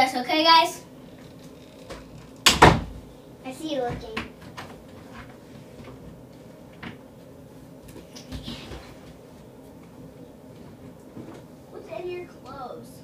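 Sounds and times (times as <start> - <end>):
soft knocks and rustles: 10.5 - 11.5.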